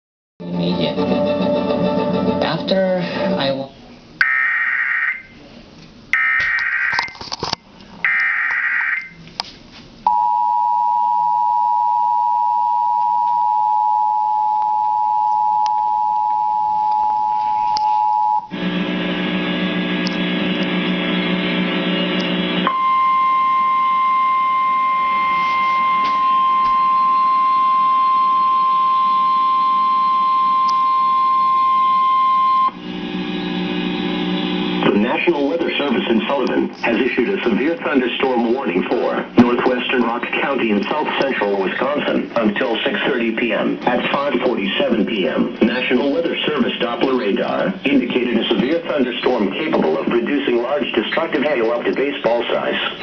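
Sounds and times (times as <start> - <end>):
steady warning tone: 10.1 - 36.5
harsh buzz: 18.5 - 23.0, 24.1 - 35.9
two-tone attention signal: 22.7 - 32.8.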